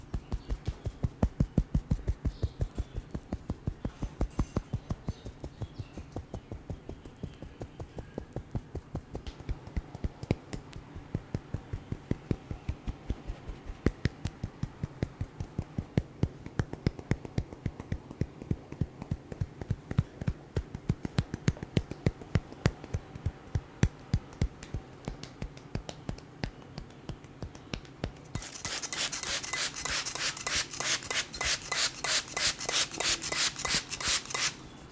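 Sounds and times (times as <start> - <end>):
hands tapping on a head: 0.1 - 28.2
dense rubbing sound: 28.2 - 34.9.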